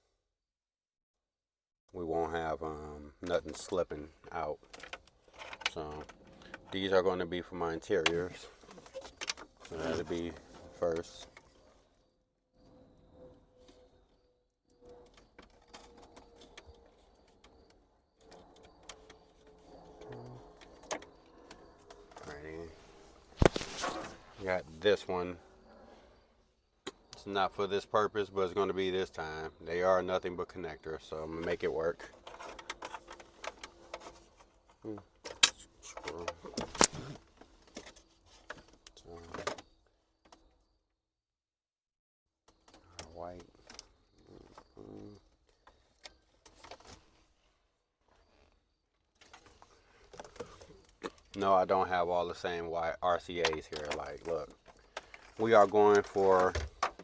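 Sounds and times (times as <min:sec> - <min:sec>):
cables clicking and rustling: 0:14.7 - 0:24.6, 0:31.4 - 0:40.5, 0:53.3 - 0:57.0.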